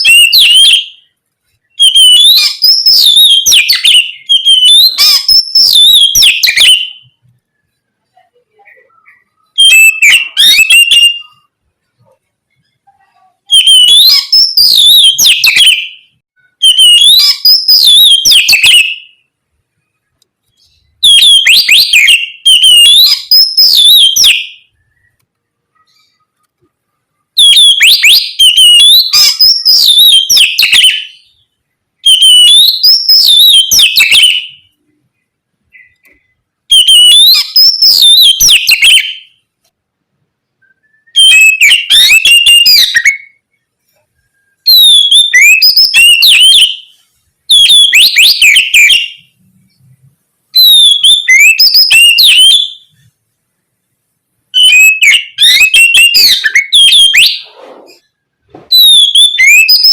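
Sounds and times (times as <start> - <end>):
bird singing whistled song: 0.0 - 7.8, 8.6 - 11.5, 13.5 - 19.3, 20.5 - 25.2, 27.4 - 34.8, 35.7 - 39.4, 40.6 - 43.6, 44.2 - 49.4, 50.6 - 53.0, 54.6 - 58.1, 58.7 - 59.9.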